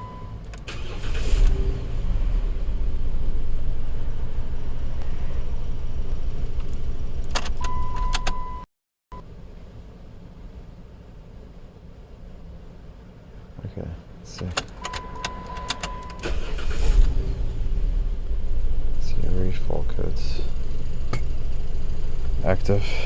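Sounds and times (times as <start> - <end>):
car engine starting and idling: 0.0 - 8.6, 9.2 - 23.0.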